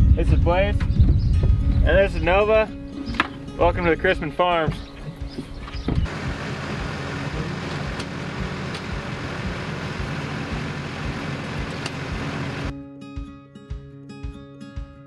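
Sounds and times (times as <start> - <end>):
road or wind noise: 0.0 - 12.7
regular low knocks: 4.6 - 7.0
low engine hum: 4.7 - 12.7.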